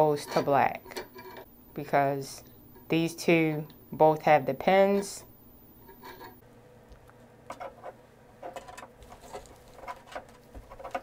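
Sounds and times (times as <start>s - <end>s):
hand tools cutting wires: 8.4s - 11.0s.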